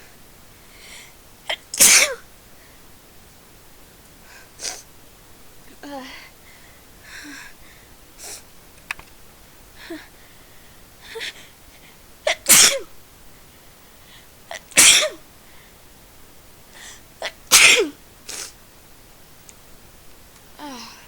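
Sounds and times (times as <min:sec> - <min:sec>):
person sneezing: 0:01.5 - 0:02.2, 0:12.3 - 0:12.9, 0:14.8 - 0:15.2, 0:17.2 - 0:18.6
short sharp sound before sneeze: 0:01.8 - 0:02.2, 0:12.4 - 0:12.9, 0:14.8 - 0:15.2, 0:17.5 - 0:18.6.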